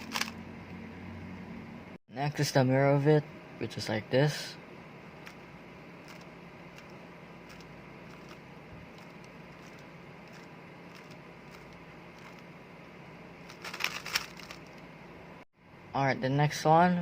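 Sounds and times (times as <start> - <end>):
background hiss and hum: 0.0 - 17.0
puzzle cube layers clicking: 6.0 - 8.4, 9.0 - 12.4, 13.5 - 14.7.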